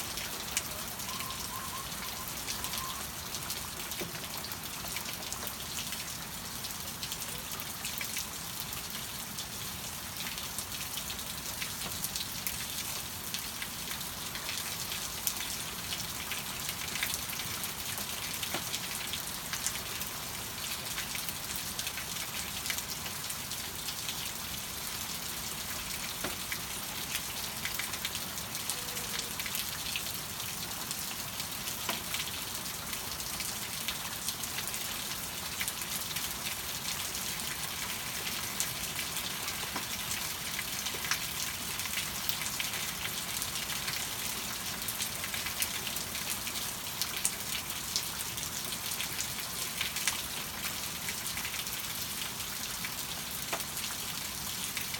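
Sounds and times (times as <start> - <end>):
raindrops ticking on surfaces: 0.0 - 54.9
steady rain falling: 0.0 - 54.9.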